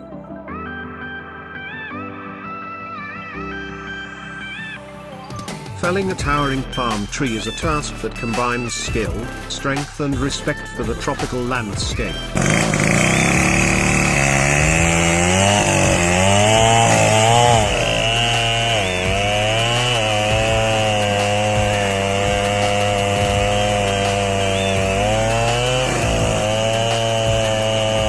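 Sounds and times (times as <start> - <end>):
chainsaw cutting wood: 5.8 - 28.0.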